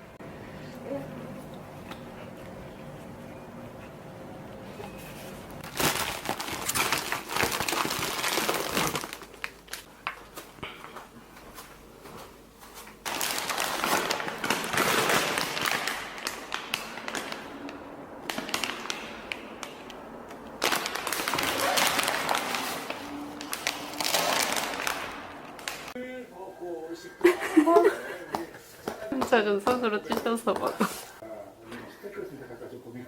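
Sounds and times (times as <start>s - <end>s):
crinkling and crackling with clicks: 5.4s - 26.0s.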